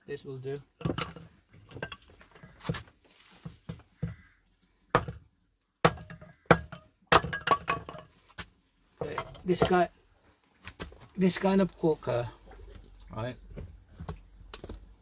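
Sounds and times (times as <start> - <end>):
wood pieces knocking together: 0.6 - 2.8, 5.8 - 8.1, 9.0 - 9.9.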